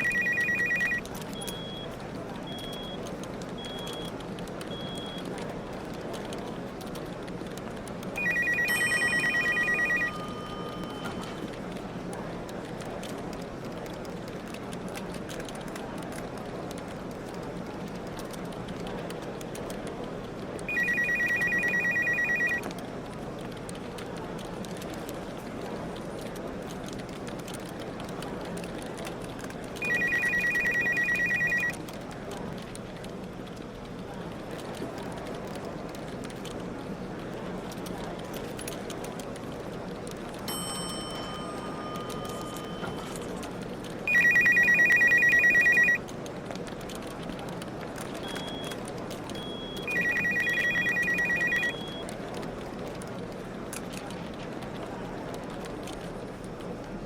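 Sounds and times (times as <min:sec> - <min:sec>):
telephone ringing trill: 0:00.0 - 0:01.8, 0:08.2 - 0:11.4, 0:20.7 - 0:22.6, 0:29.8 - 0:31.8, 0:44.1 - 0:46.0, 0:49.4 - 0:52.0
faint high beeps: 0:00.0 - 0:05.3, 0:08.2 - 0:11.6, 0:20.7 - 0:22.6, 0:29.8 - 0:31.8, 0:44.1 - 0:46.0, 0:48.2 - 0:48.8, 0:49.4 - 0:52.0
office room noise: 0:00.0 - 0:57.0
small clicks: 0:12.5 - 0:57.0.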